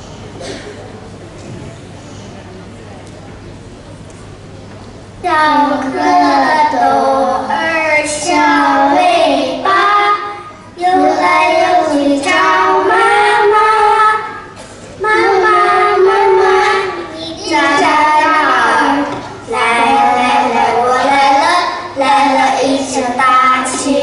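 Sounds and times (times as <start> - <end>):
children singing: 5.4 - 24.0.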